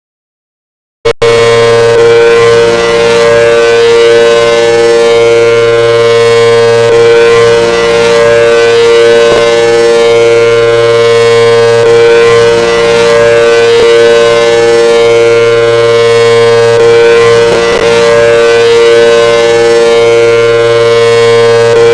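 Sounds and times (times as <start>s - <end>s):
warning siren steady tone: 1.1s - 21.9s.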